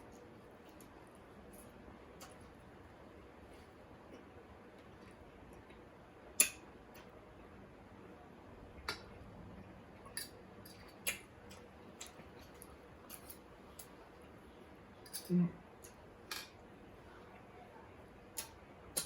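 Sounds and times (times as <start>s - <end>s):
chewing with clicks and taps: 4.1s - 7.2s, 10.1s - 14.0s.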